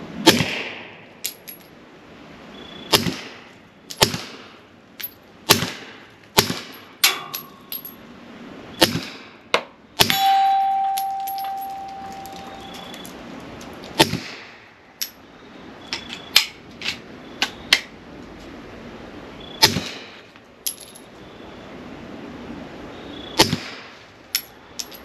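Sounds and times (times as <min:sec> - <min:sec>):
long metallic ring: 0:06.8 - 0:08.0, 0:10.1 - 0:13.2.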